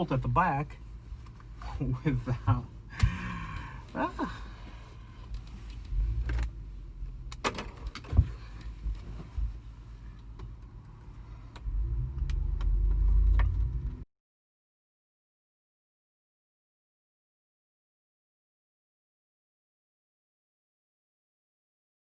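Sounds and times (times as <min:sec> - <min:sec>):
low rumbling handling noise: 0:00.8 - 0:14.0.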